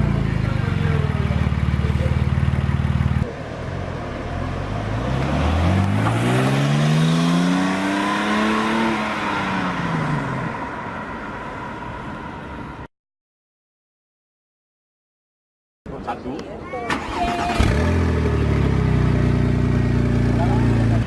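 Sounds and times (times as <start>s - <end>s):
car engine accelerating: 0.0s - 11.6s.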